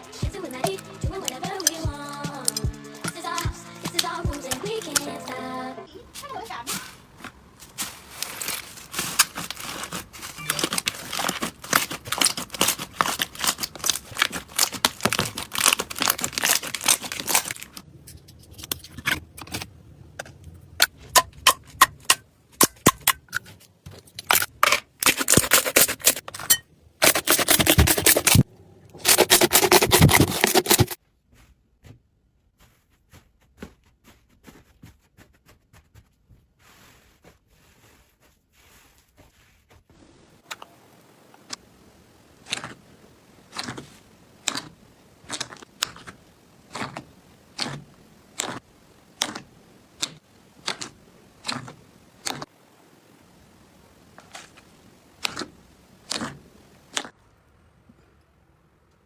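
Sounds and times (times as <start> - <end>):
slime crackling and popping: 8.2 - 17.8, 43.5 - 52.5.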